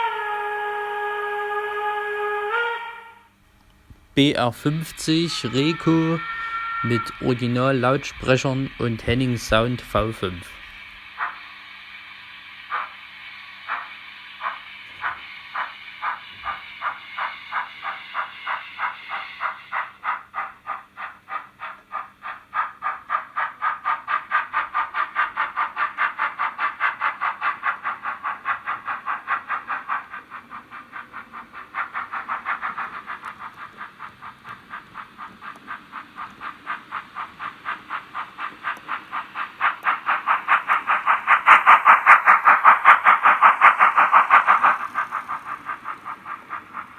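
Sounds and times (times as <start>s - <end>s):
thin steam exhaust chuffs: 0.0s - 46.9s.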